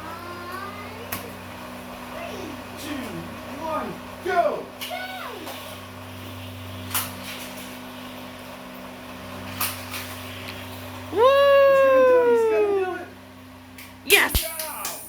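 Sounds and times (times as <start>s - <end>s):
child shouting: 4.9s - 5.4s, 14.1s - 14.9s.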